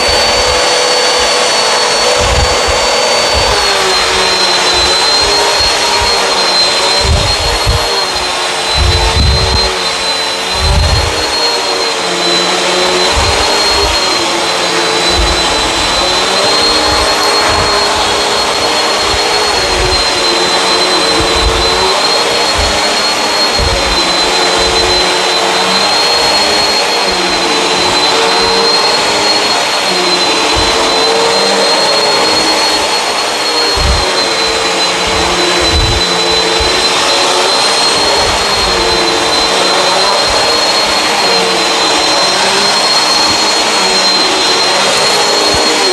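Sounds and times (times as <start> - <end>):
vacuum cleaner running on carpet: 0.0 - 45.9
low bumps: 6.9 - 9.7, 10.5 - 11.4.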